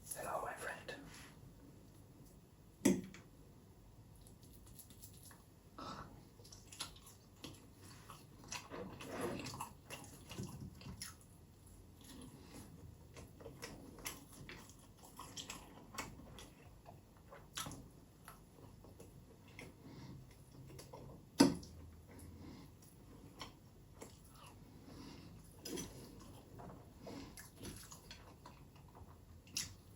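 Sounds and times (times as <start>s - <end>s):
close chewing and biting: 6.4s - 21.8s, 25.2s - 29.9s.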